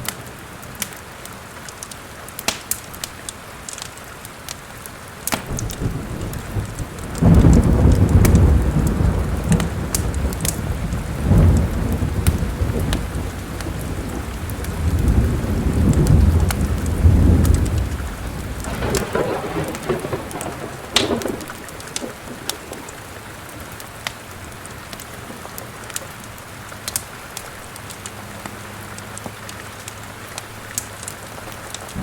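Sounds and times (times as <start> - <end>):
steady rain: 0.0 - 32.0
wood fire crackling: 0.0 - 32.0
thunder rumbling: 5.4 - 25.9.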